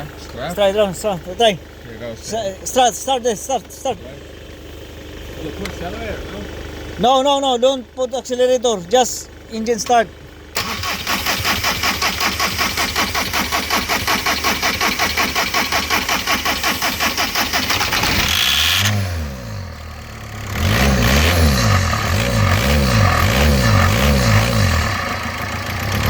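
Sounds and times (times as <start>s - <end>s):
diesel engine running unevenly: 0.0s - 26.0s
starter motor cranking: 10.5s - 19.0s.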